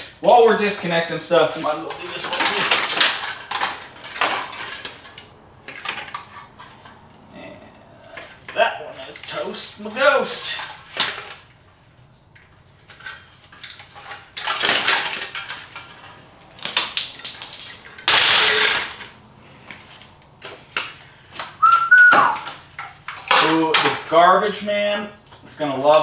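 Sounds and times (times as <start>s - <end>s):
clatter of parts: 0.0s - 24.6s
car parts clicking and rattling: 0.0s - 26.0s
short high whistle: 21.6s - 22.5s.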